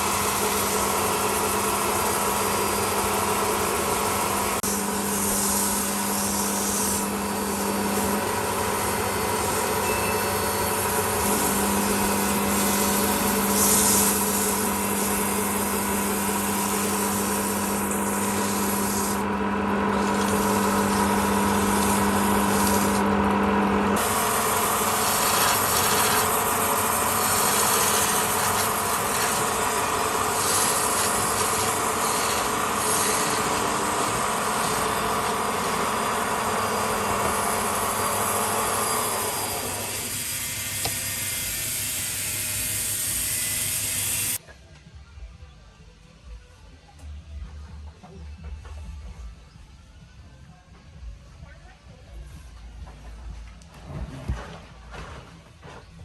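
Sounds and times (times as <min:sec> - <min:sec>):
turning tool scraping wood: 0:00.0 - 0:44.4
wood lathe humming: 0:00.0 - 0:44.4.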